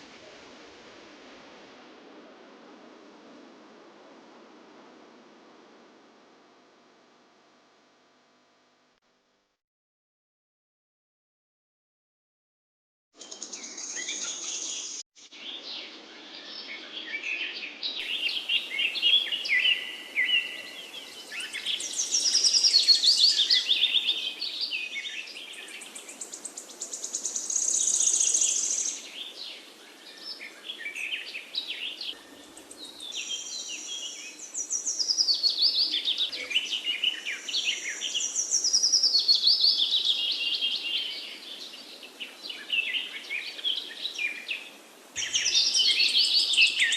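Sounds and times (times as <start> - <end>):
songbirds chirping and trilling: 13.2 - 46.9.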